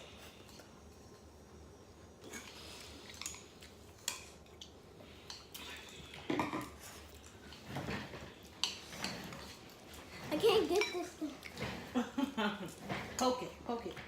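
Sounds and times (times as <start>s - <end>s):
utensils clinking on plates: 2.2s - 14.0s
dishes clattering: 6.2s - 6.8s, 7.5s - 13.4s.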